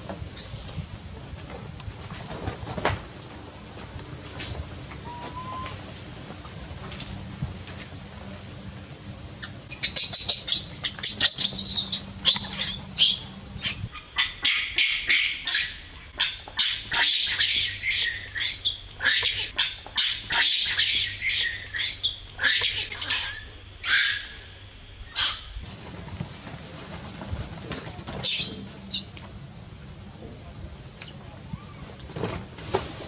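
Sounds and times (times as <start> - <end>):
baby monkey screeching: 9.4 - 15.7, 27.8 - 29.1.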